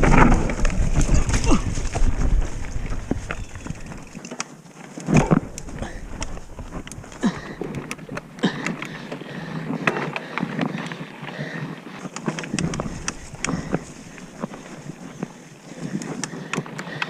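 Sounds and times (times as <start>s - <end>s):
mountain bike rattling on dirt trail: 0.0s - 17.0s.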